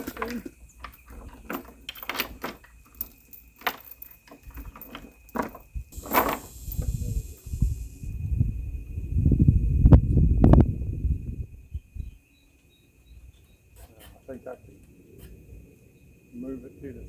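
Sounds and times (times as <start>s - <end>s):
steel chain clanking: 0.0s - 6.9s.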